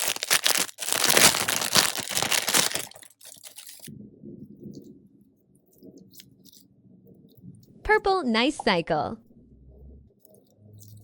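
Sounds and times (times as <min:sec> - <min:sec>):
plastic packaging crinkling and tearing: 0:00.0 - 0:03.9
muffled handling sounds: 0:02.6 - 0:03.9.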